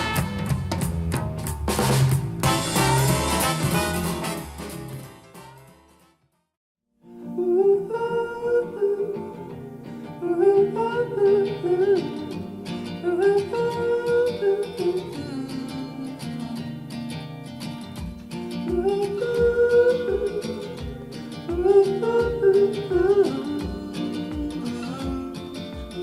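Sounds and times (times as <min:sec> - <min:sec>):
low beat: 0:00.0 - 0:05.2
light pop song over speakers: 0:18.0 - 0:26.0.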